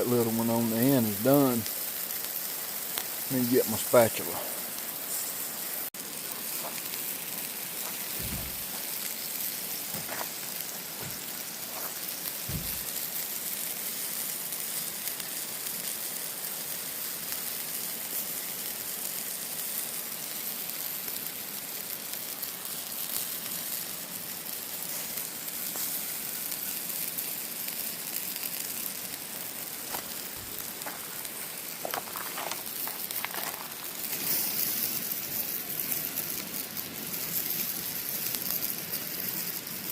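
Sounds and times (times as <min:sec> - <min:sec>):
fish sizzling in butter: 0:00.0 - 0:39.9
soft knocks: 0:12.5 - 0:12.8.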